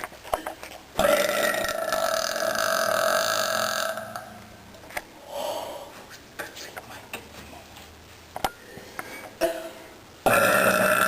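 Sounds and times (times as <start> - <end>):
person burping: 1.0 - 4.4, 9.4 - 11.0.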